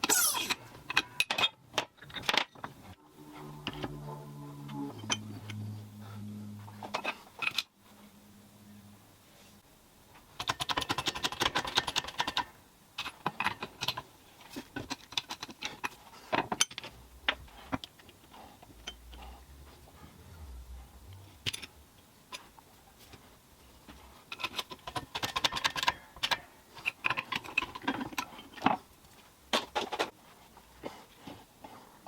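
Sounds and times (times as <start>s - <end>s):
metal parts clicking and rattling: 0.0s - 2.8s, 10.4s - 19.2s, 21.3s - 22.5s, 24.3s - 30.1s.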